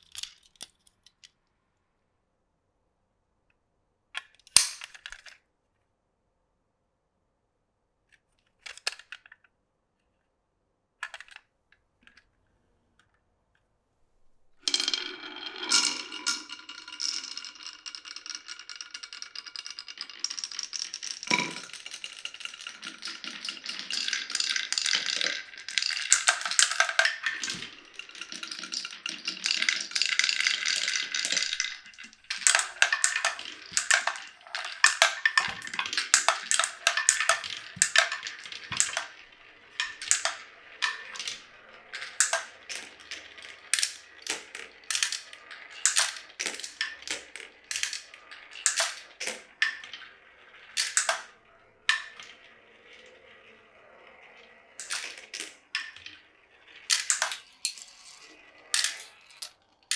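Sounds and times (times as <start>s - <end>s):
marbles rolling on wooden track: 14.6s - 59.9s.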